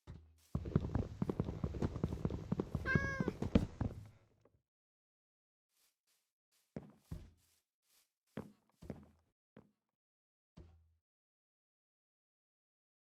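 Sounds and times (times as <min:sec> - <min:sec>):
cat meowing: 0:02.8 - 0:03.5.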